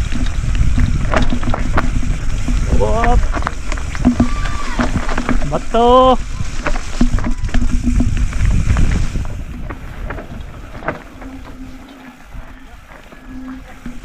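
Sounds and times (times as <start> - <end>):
bike knocking over rocks: 0.0 - 14.0
bike tyres crunching over dirt: 0.0 - 14.0
wind rumble on microphone: 0.0 - 14.0.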